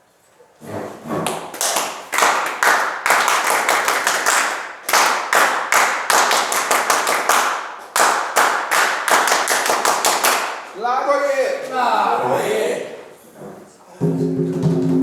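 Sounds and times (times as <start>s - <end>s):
people clapping rhythmically: 1.3s - 10.8s.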